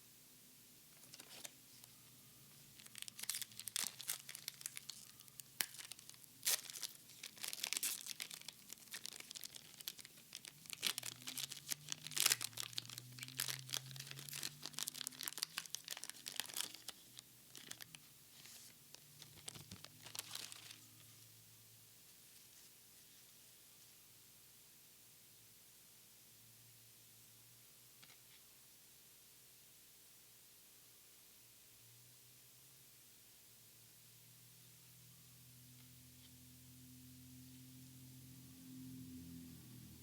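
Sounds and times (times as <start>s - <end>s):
plastic wrapper crinkling and tearing: 1.0s - 1.9s, 2.7s - 21.0s.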